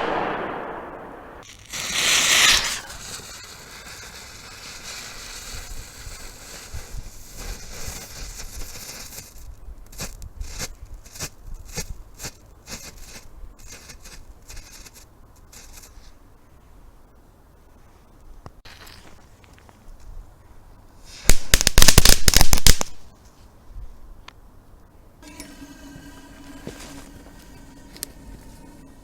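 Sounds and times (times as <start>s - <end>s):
fireworks hissing: 0.0s - 11.3s, 21.0s - 23.0s
fireworks crackling pops: 0.0s - 16.0s, 21.1s - 23.1s.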